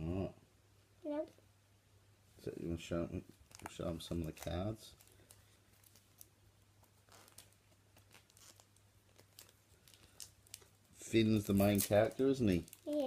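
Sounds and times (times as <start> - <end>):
trading cards and wrappers rustling: 3.3 - 13.0.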